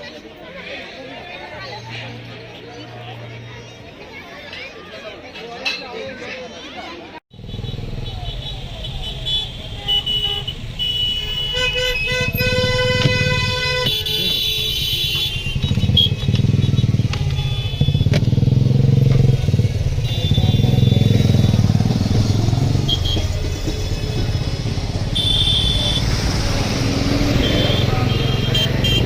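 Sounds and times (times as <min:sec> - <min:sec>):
street traffic: 0:00.0 - 0:29.0
vehicle horn honking: 0:07.4 - 0:19.0, 0:19.8 - 0:26.3, 0:27.2 - 0:29.0
motorcycle engine running: 0:12.2 - 0:29.0.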